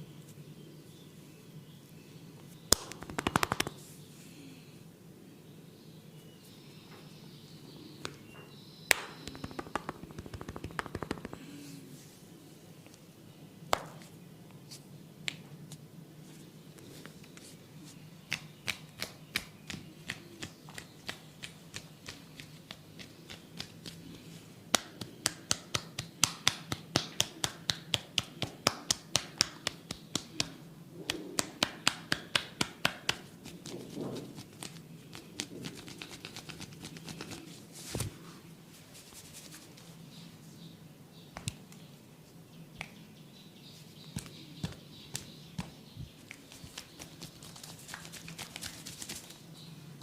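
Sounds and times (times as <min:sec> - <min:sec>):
hands rubbing: 0:02.7 - 0:03.8, 0:09.3 - 0:11.6, 0:45.6 - 0:49.4
hands snapping and tapping: 0:02.7 - 0:03.8, 0:08.9 - 0:11.5, 0:13.7 - 0:14.1, 0:15.2 - 0:15.4, 0:18.3 - 0:24.0, 0:24.7 - 0:33.3, 0:41.3 - 0:41.8, 0:42.8 - 0:43.0, 0:44.1 - 0:49.3.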